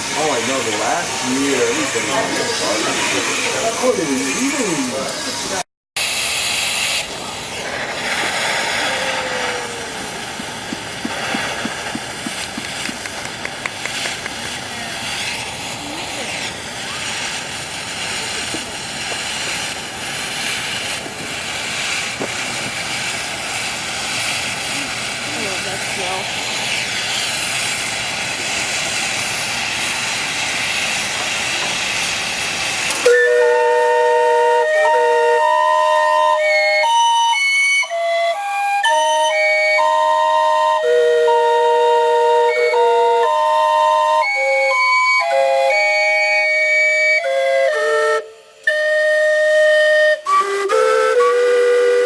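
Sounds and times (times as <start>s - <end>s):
steam calliope whistle notes: 0.0s - 7.1s, 8.4s - 13.8s, 32.8s - 52.0s
steam hissing: 0.0s - 52.0s
sharp ticks: 10.7s - 14.5s.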